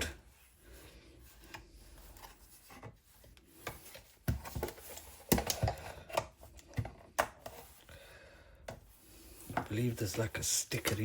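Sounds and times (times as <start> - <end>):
soft rubbing of plastic: 0.0 - 7.9
plastic clicks and knocks: 3.7 - 7.5.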